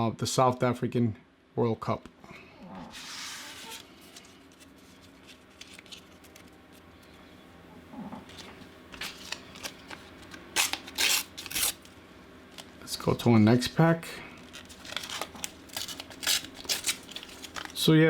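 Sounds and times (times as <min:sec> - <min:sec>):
paper stickers rustling: 0:03.0 - 0:06.8, 0:08.3 - 0:11.8, 0:14.4 - 0:18.0.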